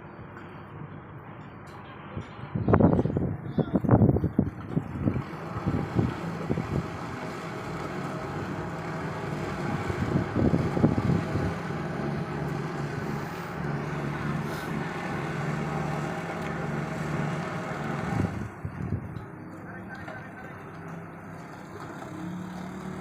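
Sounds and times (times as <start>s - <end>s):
wind and water rushing: 2.7s - 19.1s
boat engine running: 2.7s - 23.0s.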